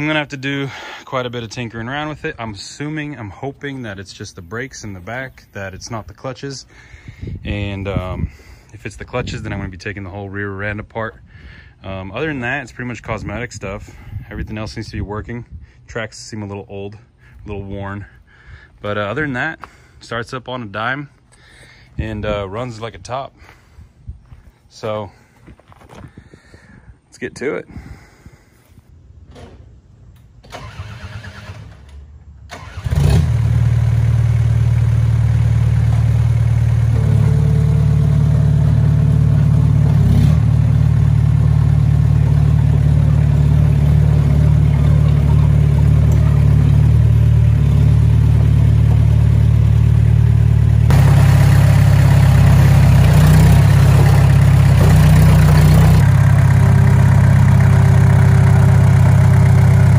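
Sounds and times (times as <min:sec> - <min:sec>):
bulldozer diesel engine: 0:30.5 - 0:59.9.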